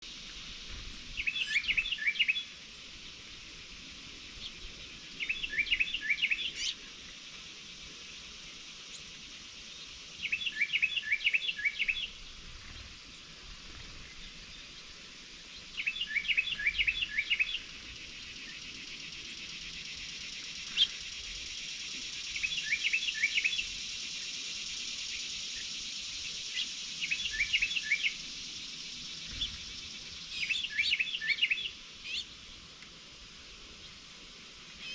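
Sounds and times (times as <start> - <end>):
outdoor hiss: 0.0 - 34.9
songbird whistling: 1.2 - 2.5, 5.2 - 6.8, 10.2 - 12.2, 15.8 - 17.7, 22.2 - 23.8, 25.0 - 32.3.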